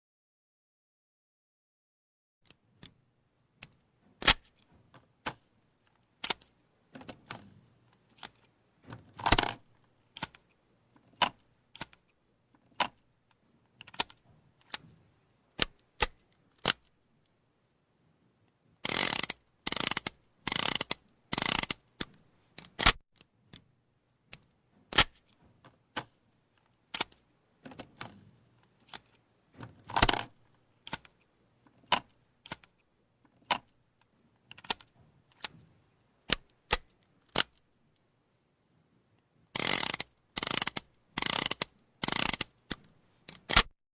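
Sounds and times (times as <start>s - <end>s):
revolver clicking while reloaded: 18.8s - 22.1s, 39.6s - 43.7s.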